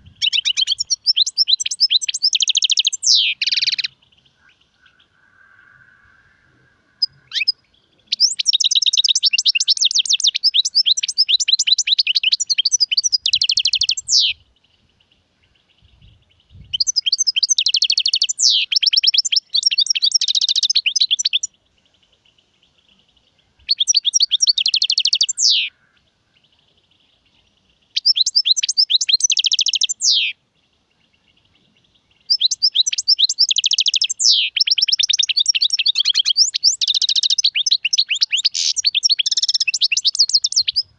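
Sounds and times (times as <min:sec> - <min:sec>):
finch twittering trills: 0:00.0 - 0:05.1, 0:06.9 - 0:14.4, 0:23.6 - 0:26.0, 0:27.9 - 0:30.4, 0:31.1 - 0:40.9.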